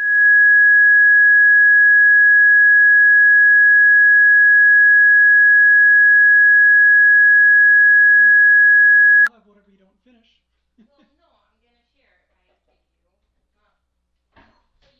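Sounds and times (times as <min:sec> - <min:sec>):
faint higher tone: 0:00.0 - 0:09.3
high electronic pure tone: 0:00.0 - 0:09.3.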